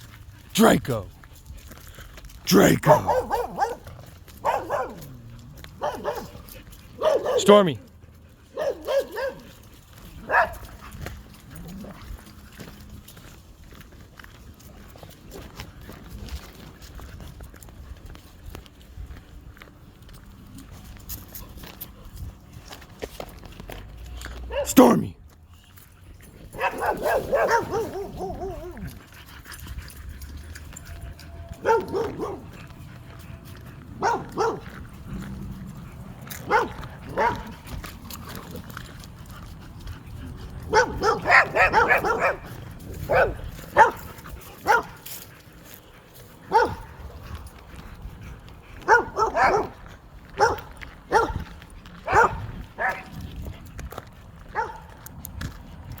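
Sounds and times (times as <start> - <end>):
dogs barking: 2.8 - 7.6, 8.4 - 9.5, 10.2 - 10.8, 24.4 - 24.8, 26.5 - 28.9, 31.0 - 32.8, 33.5 - 35.0, 36.2 - 37.8, 40.6 - 45.1, 46.5 - 47.0, 48.8 - 49.8, 50.4 - 53.2, 54.5 - 55.0.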